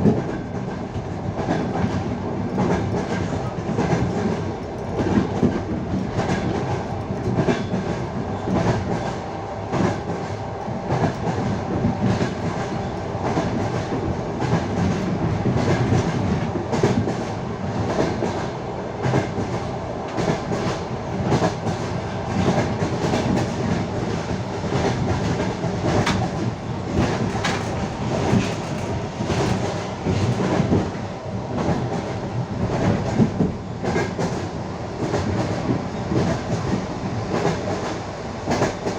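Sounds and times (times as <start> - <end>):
train running rumble: 0.0 - 38.9
train wheels clattering over rail joints: 10.9 - 31.0.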